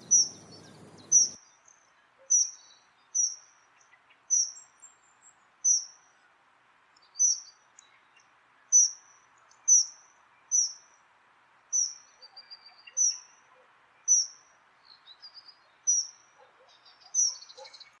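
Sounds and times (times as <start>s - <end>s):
faint bird chirps: 0.0s - 6.2s
faint background hiss: 0.0s - 18.0s.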